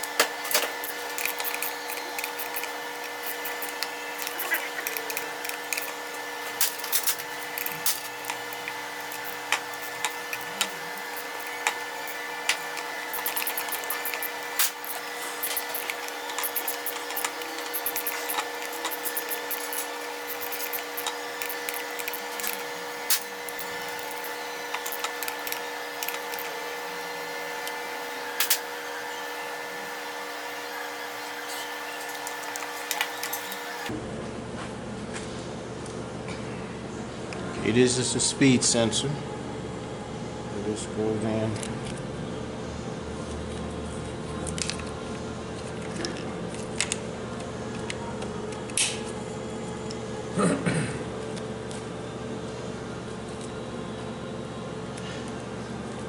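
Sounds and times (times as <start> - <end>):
steady machine hum: 0.0 - 34.1.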